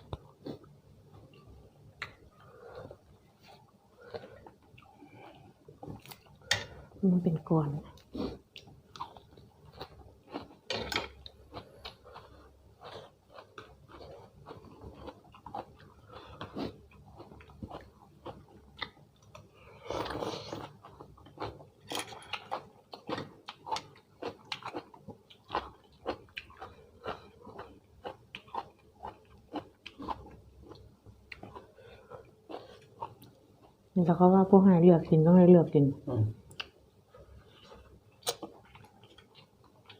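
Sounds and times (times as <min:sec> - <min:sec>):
person chewing and biting food: 0:08.0 - 0:33.8, 0:36.5 - 0:39.9.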